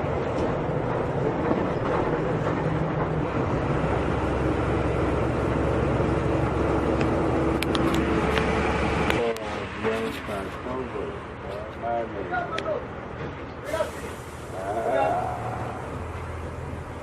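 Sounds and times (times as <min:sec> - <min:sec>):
bus engine drone: 0:00.0 - 0:17.0
road noise: 0:00.0 - 0:17.0.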